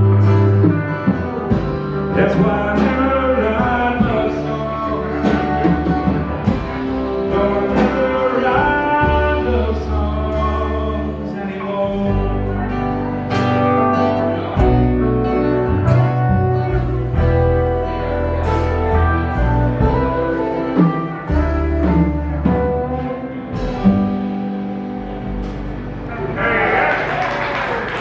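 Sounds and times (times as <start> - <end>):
country band instrumental music: 0.0 - 28.0.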